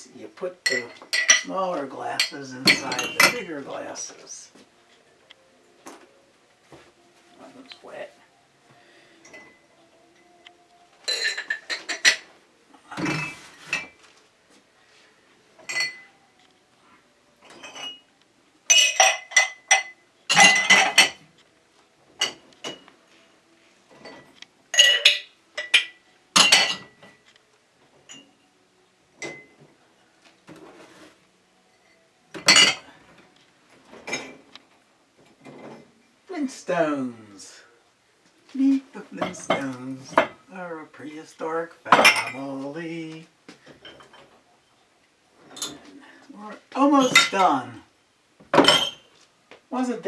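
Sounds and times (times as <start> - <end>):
glasses and dishes clinking: 0.0 - 8.1, 8.7 - 14.2, 15.6 - 16.2, 17.4 - 18.1, 18.7 - 21.4, 22.1 - 23.2, 23.9 - 27.3, 27.9 - 28.5, 29.1 - 29.8, 31.7 - 36.0, 39.0 - 40.5, 41.2 - 44.8, 45.4 - 47.8, 48.5 - 49.2.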